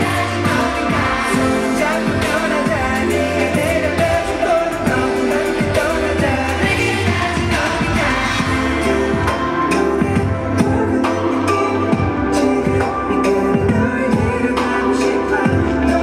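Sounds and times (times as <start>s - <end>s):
man singing: 0.0s - 16.0s
pop song with drum beat: 0.0s - 16.0s.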